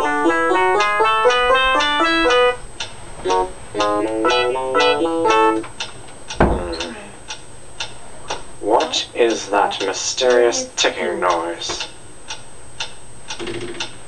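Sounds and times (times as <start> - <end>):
loud thump: 6.4 - 6.9.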